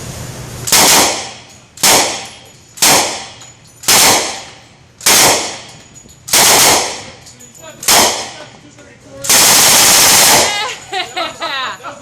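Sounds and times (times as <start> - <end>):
submachine gun automatic bursts: 0.7 - 2.2, 3.9 - 4.4, 5.0 - 5.6, 6.3 - 7.0, 9.3 - 10.6.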